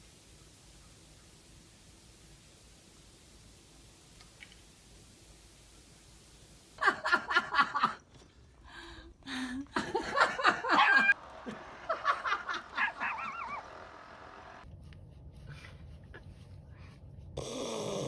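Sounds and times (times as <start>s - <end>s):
laughter in pulsed bursts: 6.8s - 8.0s, 9.3s - 14.6s.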